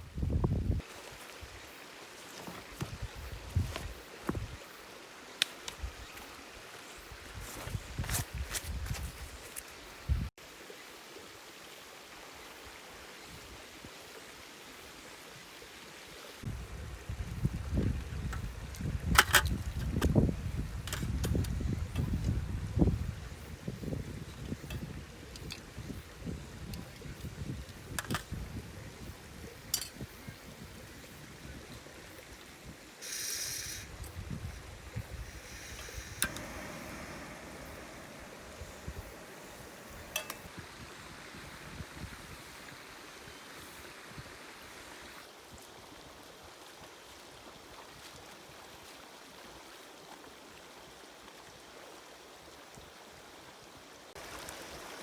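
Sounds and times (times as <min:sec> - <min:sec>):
wind buffeting microphone: 0:00.0 - 0:00.8, 0:02.8 - 0:04.6, 0:16.5 - 0:32.0, 0:33.8 - 0:42.9
brief hiss: 0:33.0 - 0:40.7
low rumbling on microphone: 0:34.2 - 0:40.8
river water rushing: 0:35.5 - 0:41.7.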